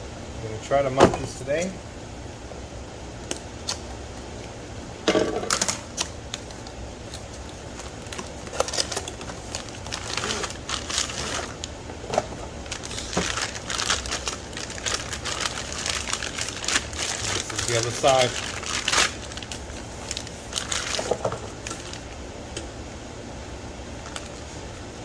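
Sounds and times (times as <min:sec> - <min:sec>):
packaging crackling: 0:05.5 - 0:22.2.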